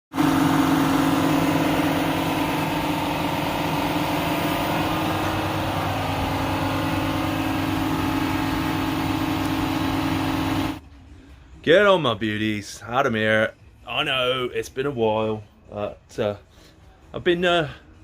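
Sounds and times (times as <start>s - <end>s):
car engine drone: 0.1s - 11.4s.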